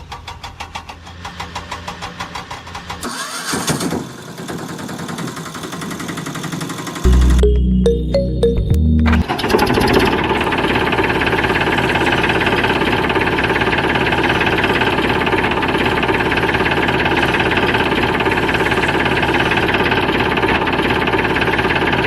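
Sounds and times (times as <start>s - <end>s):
tractor engine idling: 9.3s - 22.0s.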